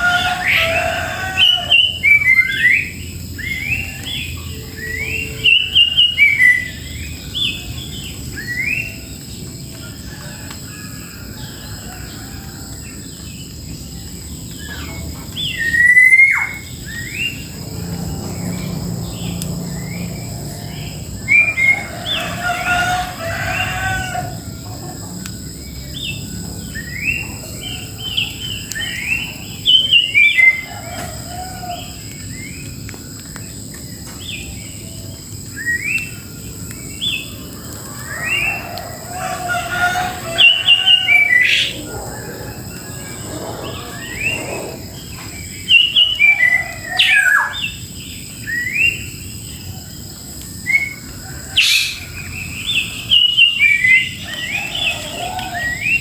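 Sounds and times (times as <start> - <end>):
birds chirping: 0.0 - 56.0
high-pitched whine: 2.2 - 9.6.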